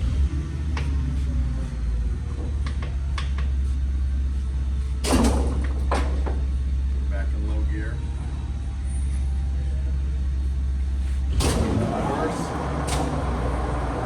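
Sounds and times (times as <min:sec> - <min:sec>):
loud clunk: 0:05.0 - 0:06.4, 0:11.4 - 0:12.0, 0:12.8 - 0:13.6
lathe droning: 0:10.5 - 0:14.0.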